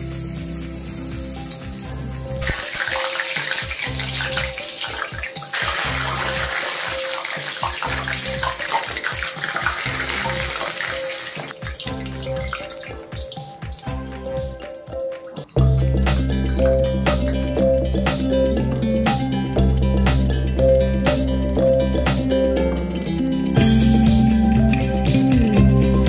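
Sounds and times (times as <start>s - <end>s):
background music with repeating tune: 0.0s - 26.0s
water rushing stream: 1.8s - 14.7s.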